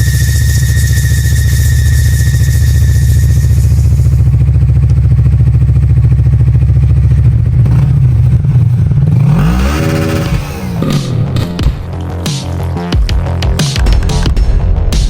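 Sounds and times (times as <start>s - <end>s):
engine running and revving: 0.0s - 13.0s.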